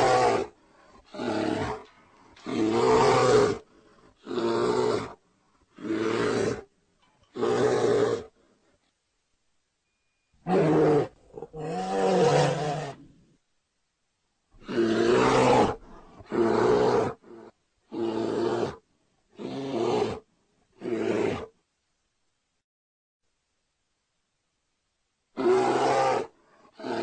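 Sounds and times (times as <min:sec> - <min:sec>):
bear calls: 0:00.0 - 0:00.5, 0:25.4 - 0:27.0.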